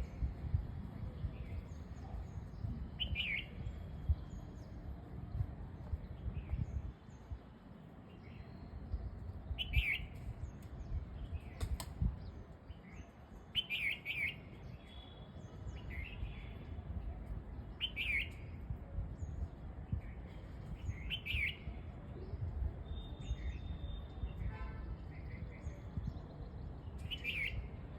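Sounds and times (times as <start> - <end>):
steady low rumble: 0.0 - 13.5.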